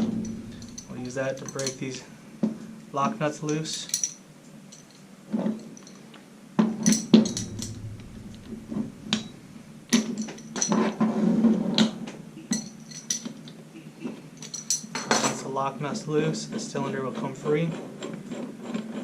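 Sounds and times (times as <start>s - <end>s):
spanner clinking on metal nuts: 14.4s - 15.2s.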